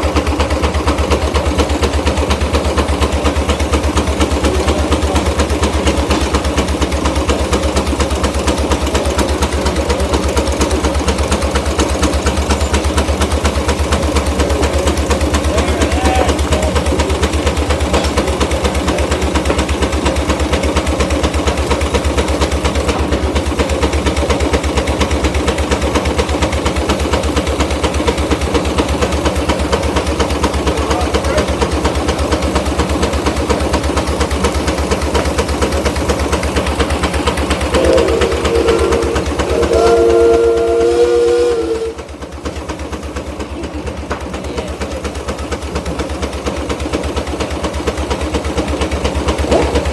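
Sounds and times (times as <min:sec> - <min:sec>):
steam engine running: 0:00.0 - 0:49.9.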